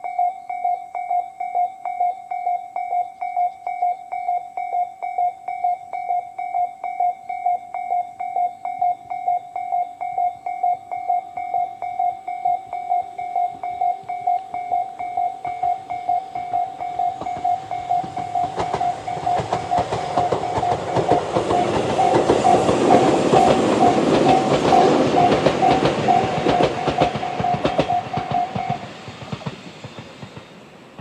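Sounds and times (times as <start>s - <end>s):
level crossing alarm dinging: 0.0s - 29.0s
train wheels clicking over rail joints: 8.8s - 31.0s.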